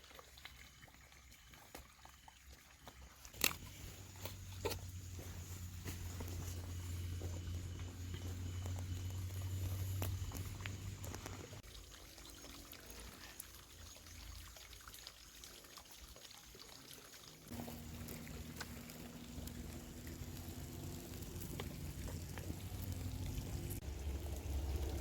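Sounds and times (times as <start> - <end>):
liquid pouring and trickling: 0.0 - 25.0
low hum: 3.4 - 11.6, 17.5 - 25.0.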